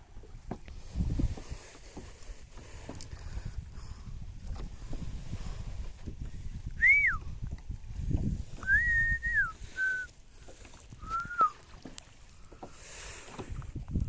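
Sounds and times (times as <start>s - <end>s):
whistled notes: 8.6s - 10.1s, 11.0s - 11.6s.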